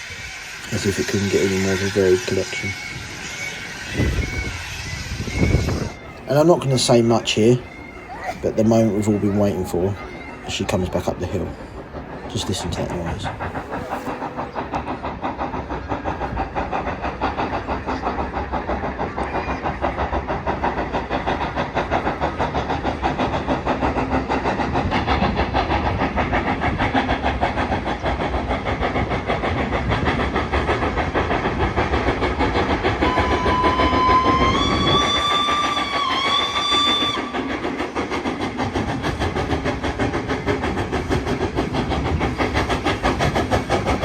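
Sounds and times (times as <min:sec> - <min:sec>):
steam locomotive exhaust chuffs: 0:00.0 - 0:44.0
steam whistle: 0:33.0 - 0:37.4.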